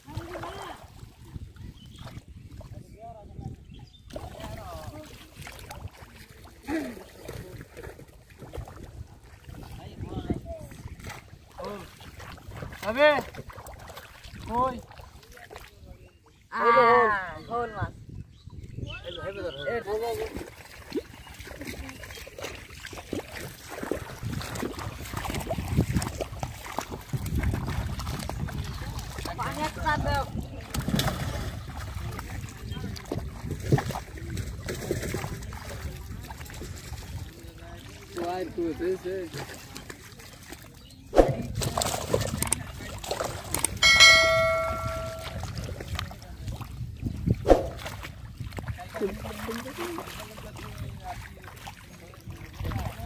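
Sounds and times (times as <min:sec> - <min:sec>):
pond water sloshing and splashing: 0:00.0 - 0:17.3, 0:18.5 - 0:53.0
metallic bell-like ring: 0:43.8 - 0:45.6.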